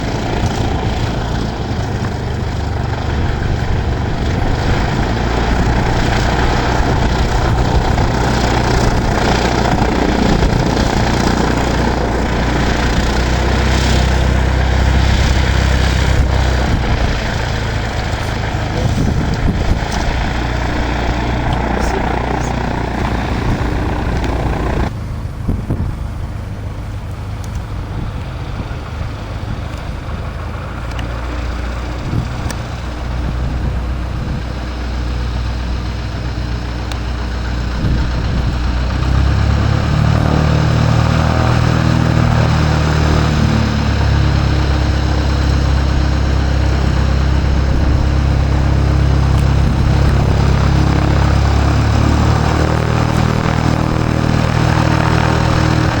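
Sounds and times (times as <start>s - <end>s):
engine running low drone: 0.0s - 56.0s.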